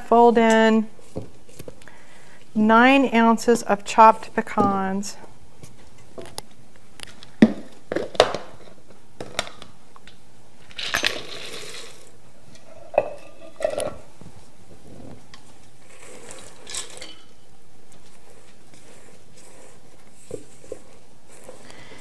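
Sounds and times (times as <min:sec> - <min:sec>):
utensil scraping a mixing bowl: 0:18.1 - 0:22.0.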